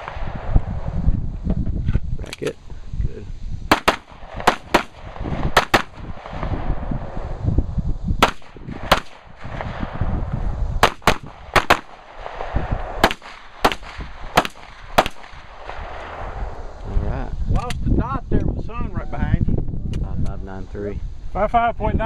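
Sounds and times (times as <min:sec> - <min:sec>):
rifle shots: 0:03.7 - 0:06.7, 0:08.2 - 0:10.0, 0:10.8 - 0:16.1.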